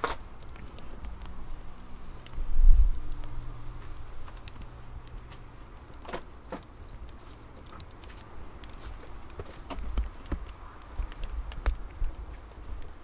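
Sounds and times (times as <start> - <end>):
wood fire crackling in a stove: 0.0 - 13.0.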